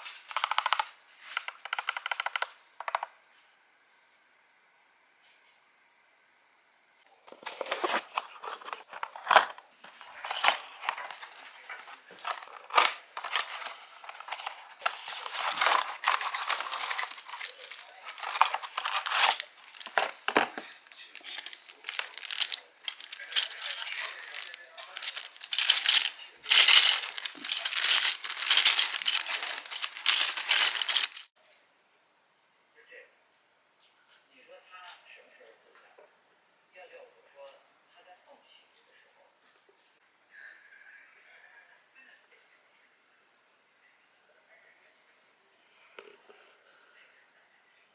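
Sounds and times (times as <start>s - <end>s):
packaging crinkling and rustling: 0.0s - 2.5s, 7.3s - 31.3s
packaging scrapes: 7.3s - 31.3s.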